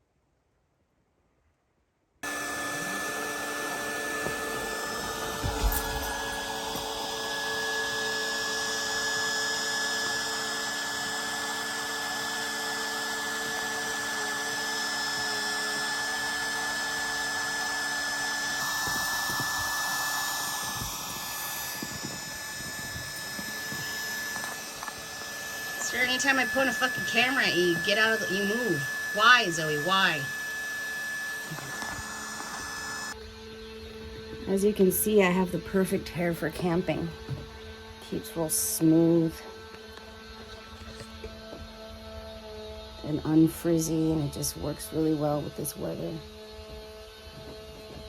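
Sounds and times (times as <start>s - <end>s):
motor-driven machine running: 2.2s - 48.0s
high whine: 15.2s - 48.0s.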